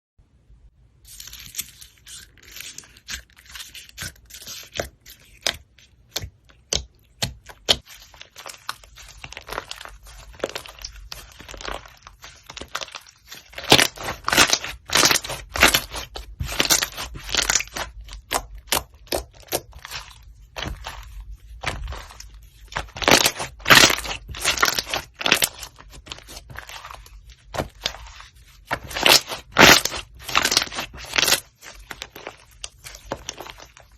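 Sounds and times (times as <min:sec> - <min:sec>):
slime crackling and popping: 0:02.0 - 0:33.9.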